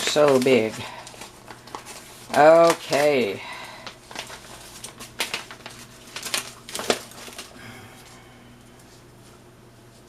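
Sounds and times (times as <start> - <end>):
paper crinkling: 0.0 - 7.6
faint steady hum: 0.0 - 10.0.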